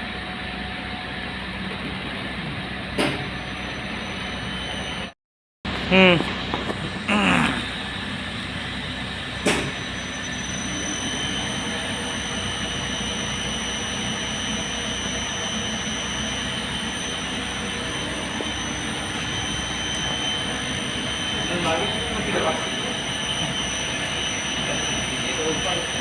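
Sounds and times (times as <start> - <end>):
lower whine: 0.0 - 5.1, 5.7 - 26.0
high whine: 0.0 - 26.0
elevator machinery humming: 5.7 - 26.0.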